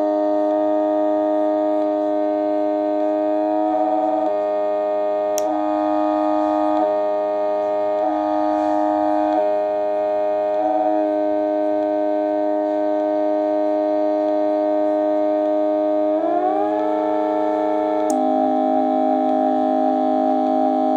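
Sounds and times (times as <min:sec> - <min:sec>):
buzzy synthesizer drone: 0:00.0 - 0:20.9.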